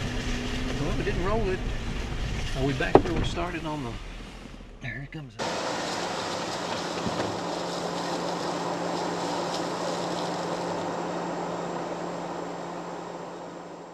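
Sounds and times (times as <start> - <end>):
car engine drone: 0.0 - 13.9
road and wind noise: 0.0 - 13.9.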